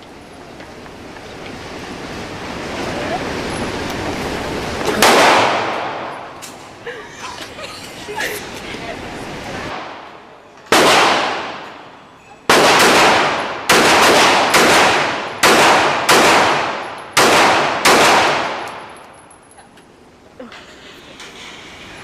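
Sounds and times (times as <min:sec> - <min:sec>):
echoing gunshots: 0:05.0 - 0:06.4, 0:10.7 - 0:11.9, 0:12.5 - 0:19.0.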